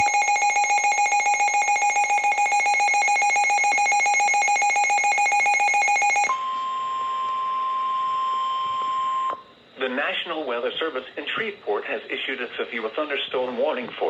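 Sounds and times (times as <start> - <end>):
rapidly pulsing electronic beep: 0.0 - 6.4
steady warning alarm tone: 0.0 - 9.8.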